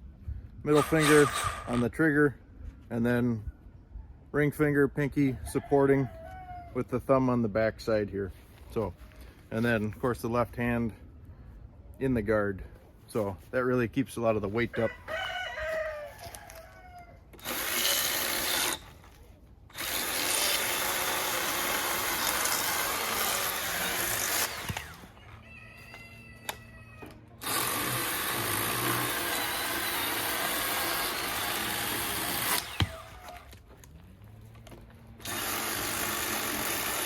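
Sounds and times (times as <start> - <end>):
electric chainsaw cutting wood: 0.7 - 1.9, 17.4 - 25.2, 27.4 - 33.7, 35.1 - 37.0
rooster crowing: 5.6 - 6.8, 14.9 - 17.2, 25.2 - 27.2.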